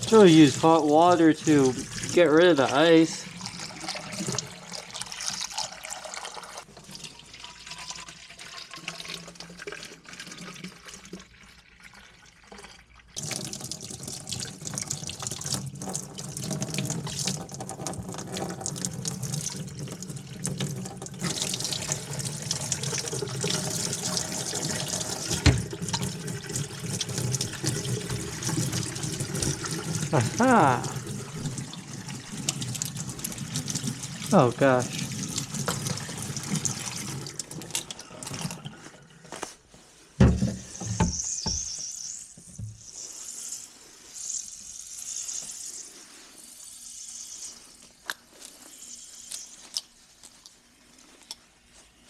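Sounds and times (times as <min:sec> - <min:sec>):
water running from tap: 0:00.0 - 0:38.8.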